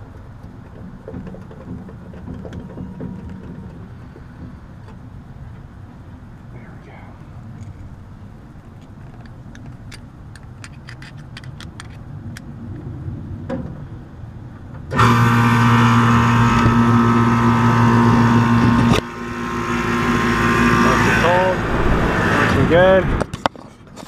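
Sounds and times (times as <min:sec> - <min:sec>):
electrical hum: 0:12.0 - 0:23.3
air conditioner unit running: 0:13.3 - 0:23.1.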